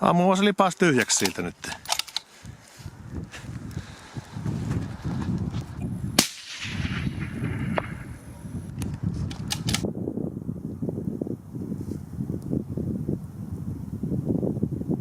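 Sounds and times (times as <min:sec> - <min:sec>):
suppressed rifle shot with echo: 0:06.1 - 0:08.3
sharp clicks: 0:08.7 - 0:09.9.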